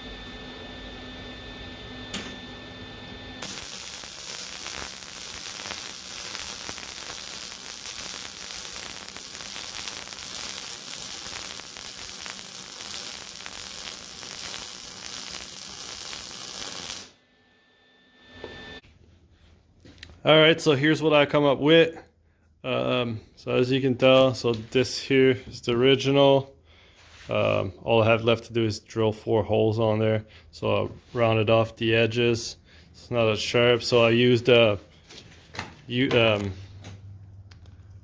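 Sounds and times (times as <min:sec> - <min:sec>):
machine hum: 0:00.0 - 0:18.8
arc welding crackling sizzle: 0:03.4 - 0:17.2.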